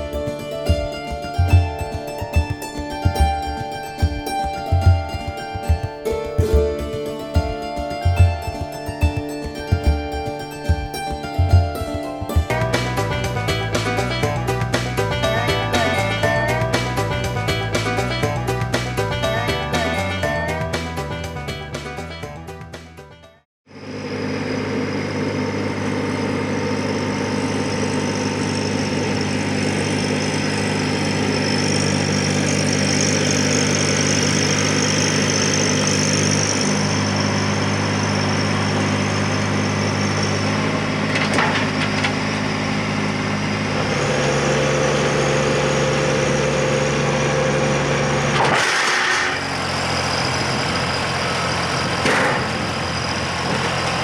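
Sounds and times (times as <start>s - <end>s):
short knocks: 0.0s - 12.8s
engine running: 0.0s - 19.9s, 23.7s - 54.0s.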